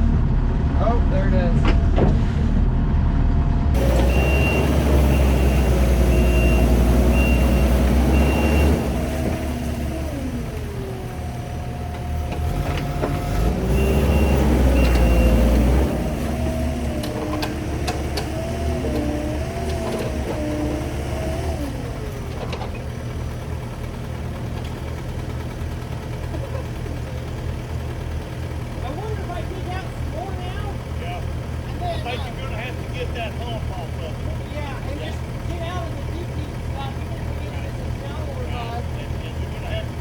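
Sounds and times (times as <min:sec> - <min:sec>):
diesel engine under load: 0:00.0 - 0:40.0
reverse alarm beeping: 0:03.8 - 0:09.0, 0:13.7 - 0:15.7
hydraulic whine: 0:03.8 - 0:27.2.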